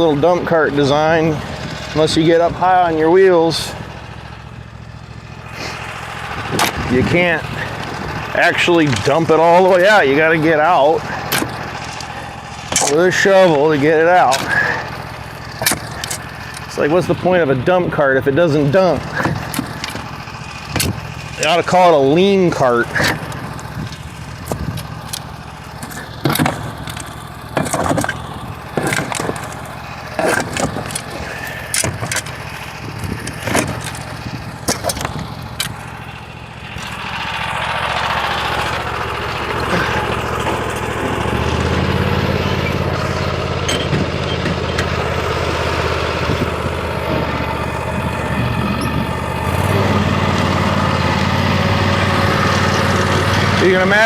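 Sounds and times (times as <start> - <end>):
tractor diesel engine: 0.0 - 54.0
sharp knocks and scrapes: 5.5 - 10.0, 11.1 - 13.4, 15.5 - 16.7, 22.9 - 35.9.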